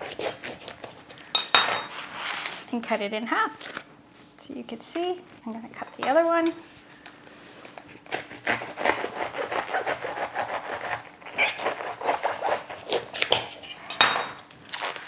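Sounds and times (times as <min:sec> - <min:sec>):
knife sawing through artichoke: 0:00.0 - 0:01.3, 0:01.9 - 0:02.7, 0:06.6 - 0:14.0.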